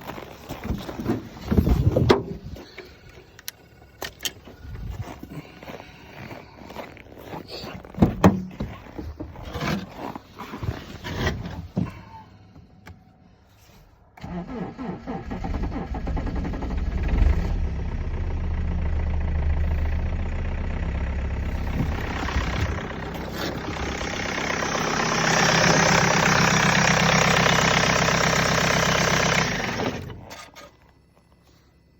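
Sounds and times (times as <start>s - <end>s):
car engine running: 16.1s - 31.9s.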